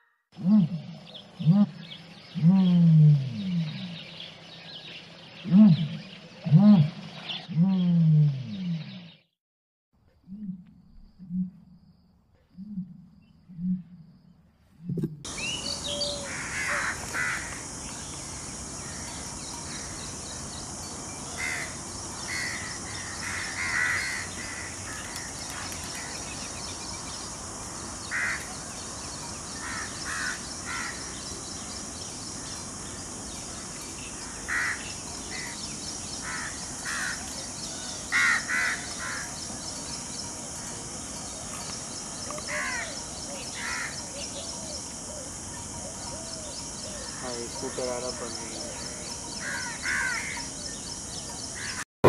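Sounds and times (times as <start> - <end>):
bird harsh calls: 15.3 - 17.6, 21.3 - 26.5, 34.2 - 39.6, 46.1 - 50.6
high-pitched hiss: 15.3 - 51.2.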